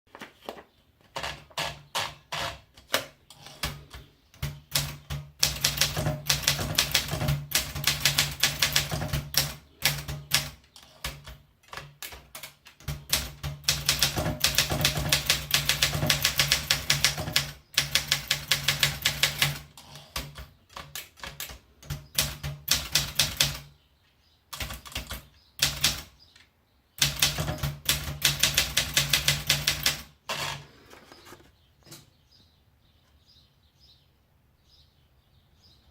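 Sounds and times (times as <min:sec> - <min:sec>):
manual typewriter typing: 0:01.1 - 0:23.7, 0:24.5 - 0:26.2, 0:27.0 - 0:30.6.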